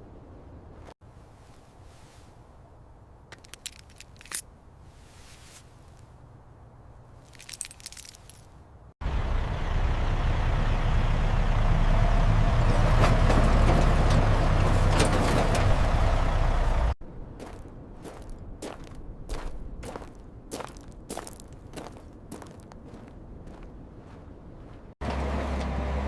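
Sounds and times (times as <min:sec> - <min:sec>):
heavy vehicle engine rumbling: 0:09.0 - 0:17.0, 0:25.0 - 0:26.0.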